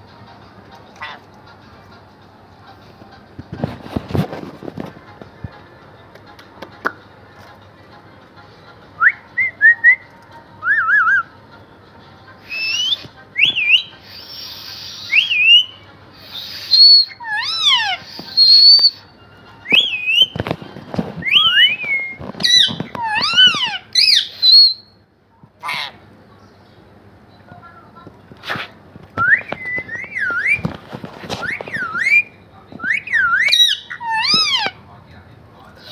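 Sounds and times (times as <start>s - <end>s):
parrot squawks: 1.0s - 1.3s, 12.4s - 19.1s, 22.4s - 24.9s, 25.6s - 26.0s, 31.4s - 32.3s, 32.9s - 34.8s
parrot whistling: 12.4s - 20.4s, 21.2s - 25.0s, 29.2s - 30.7s, 31.4s - 34.8s.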